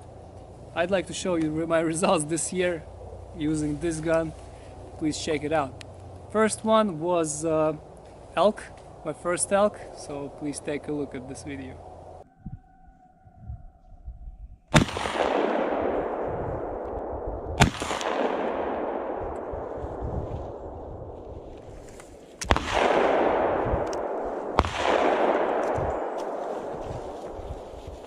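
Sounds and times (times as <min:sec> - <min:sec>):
shotgun shots with rolling echo: 0:14.7 - 0:21.2, 0:22.4 - 0:27.8.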